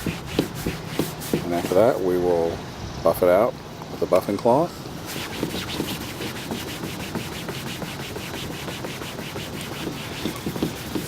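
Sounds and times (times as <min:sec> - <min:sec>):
cloth buffing plastic bumper: 0:00.0 - 0:02.1, 0:05.0 - 0:11.0.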